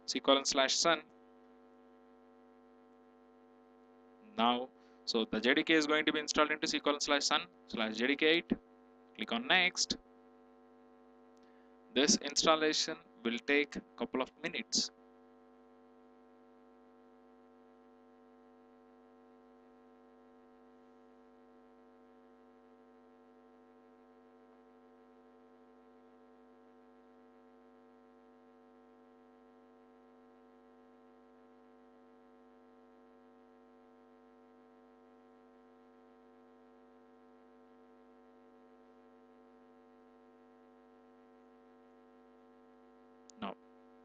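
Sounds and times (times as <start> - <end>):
faint electrical hum: 0.0 - 44.0.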